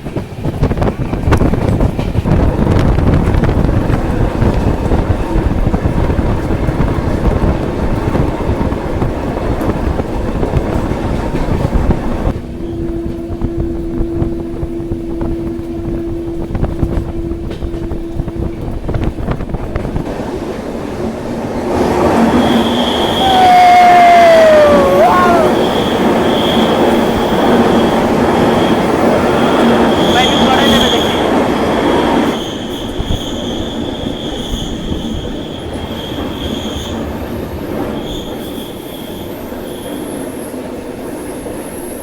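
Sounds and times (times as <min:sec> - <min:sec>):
train wheels rumbling: 0:00.0 - 0:42.0
wheels squealing on rails: 0:21.8 - 0:42.0.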